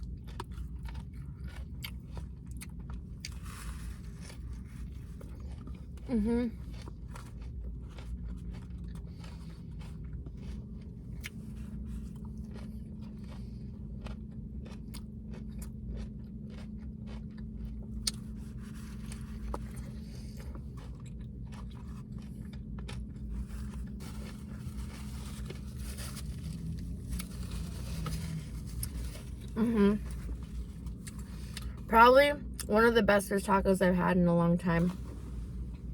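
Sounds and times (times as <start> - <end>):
person chewing food: 0.0 - 31.9, 34.9 - 35.9
steady low hum: 0.0 - 35.9.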